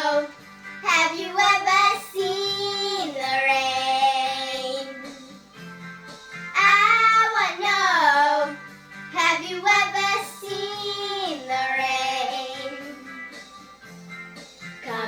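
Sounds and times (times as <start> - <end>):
quiet musical accompaniment: 0.0 - 15.0.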